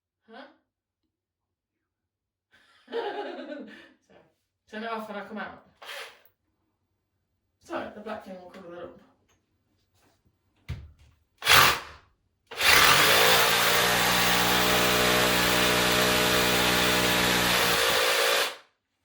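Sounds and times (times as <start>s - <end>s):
electric drill boring into wall: 11.4s - 18.7s.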